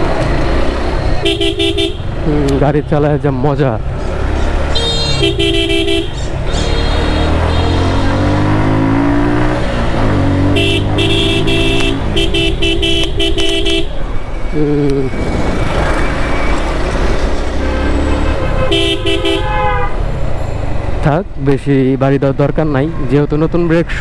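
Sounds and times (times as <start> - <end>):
vehicle horns honking: 1.2 - 2.2, 4.6 - 8.7, 9.6 - 14.2, 17.4 - 20.1
motorcycle engine accelerating: 6.9 - 12.9.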